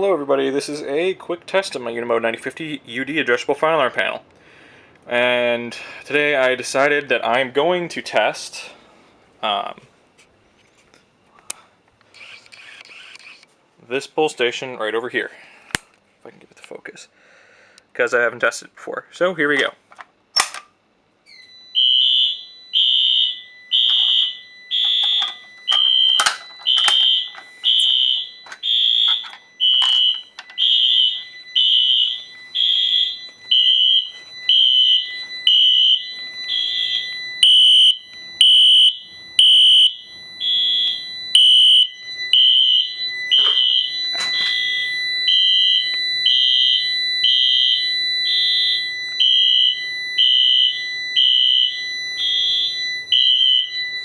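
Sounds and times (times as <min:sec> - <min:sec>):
fire alarm horn blasts: 0:21.4 - 0:54.0
steady high tone: 0:21.4 - 0:54.0.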